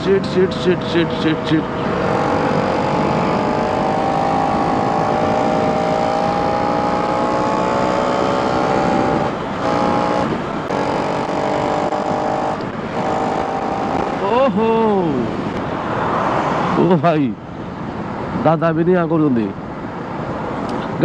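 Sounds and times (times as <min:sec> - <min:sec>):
motorcycle engine accelerating: 0:00.0 - 0:15.8
rushing riding noise: 0:00.0 - 0:19.4.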